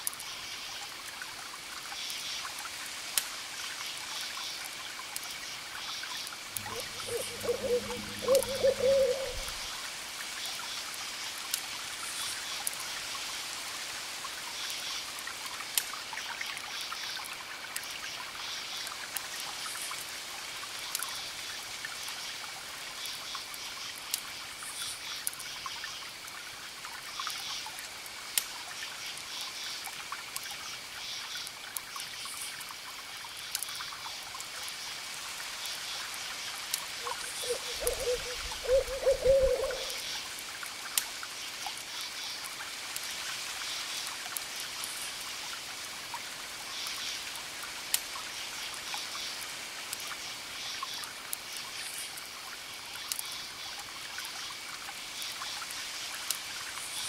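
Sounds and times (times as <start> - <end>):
trickling water: 0.0 - 57.0
owl hooting: 6.7 - 9.6, 37.0 - 40.1.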